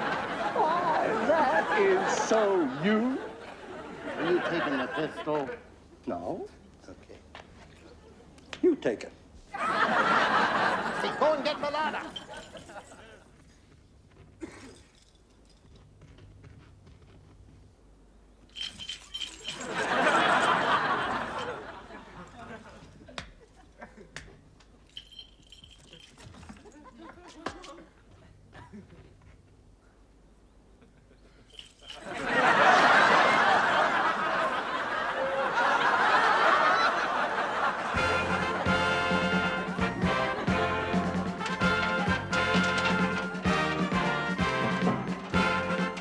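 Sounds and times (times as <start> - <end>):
studio audience laughing: 0.0 - 5.6, 9.5 - 12.8, 19.6 - 22.8, 32.0 - 41.0
sharp clinks: 11.6 - 13.2, 18.4 - 20.6, 24.8 - 26.6, 31.4 - 32.3
loud rattling crash: 39.3 - 46.0.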